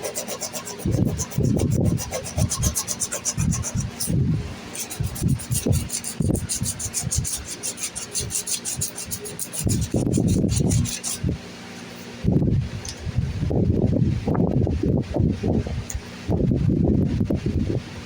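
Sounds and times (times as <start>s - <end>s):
sandpaper scratching wood: 0.0s - 11.4s
fan wind buffeting microphone: 0.0s - 18.0s.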